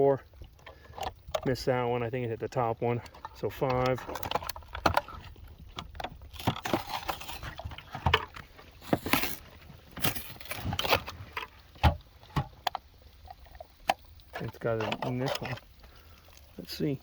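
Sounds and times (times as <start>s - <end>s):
cardboard boxes crinkling: 6.3s - 11.3s
metal cans clinking: 6.4s - 11.0s.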